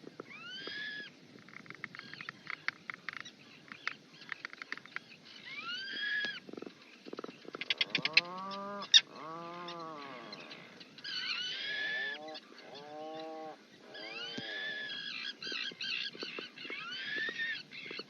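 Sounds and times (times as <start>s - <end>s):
auk calls: 7.6s - 18.0s.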